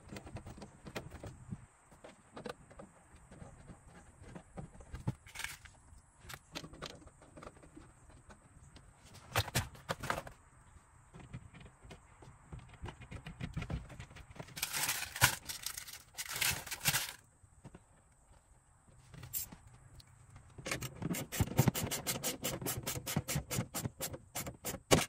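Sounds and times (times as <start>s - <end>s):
scraping and rustling: 13.3s - 17.2s.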